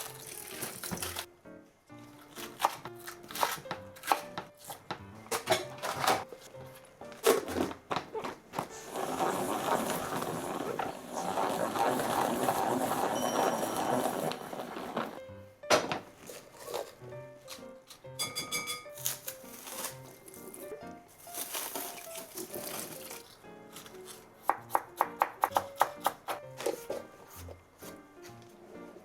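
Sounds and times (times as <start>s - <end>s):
background music: 0.0s - 29.0s
kitchen knocks and clicks: 4.4s - 6.3s
crackling rustle: 19.0s - 24.3s.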